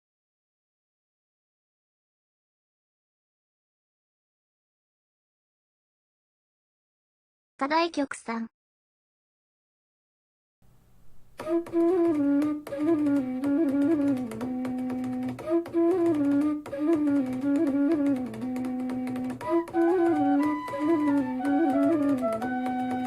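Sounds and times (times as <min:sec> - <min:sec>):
instrumental music: 0:10.9 - 0:23.0.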